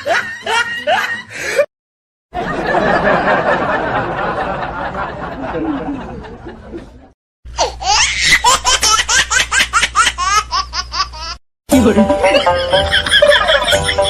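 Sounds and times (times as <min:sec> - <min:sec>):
rapid high-pitched laughter: 0:12.3 - 0:14.0.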